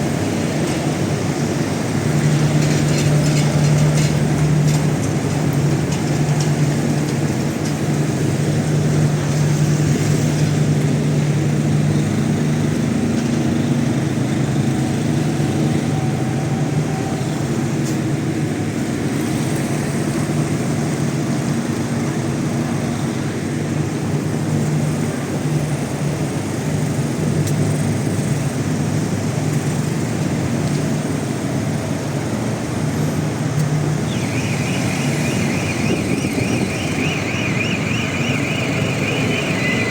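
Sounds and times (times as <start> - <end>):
street noise: 0.0 - 39.9
generators humming: 31.8 - 39.9.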